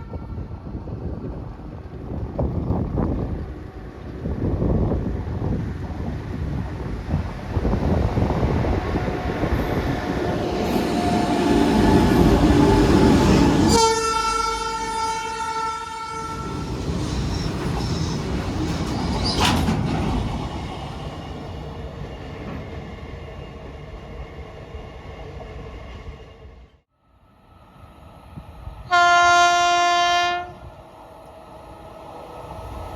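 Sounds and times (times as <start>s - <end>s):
train rumbling past: 0.0s - 32.9s
train horn blast: 13.5s - 16.5s, 28.9s - 30.7s.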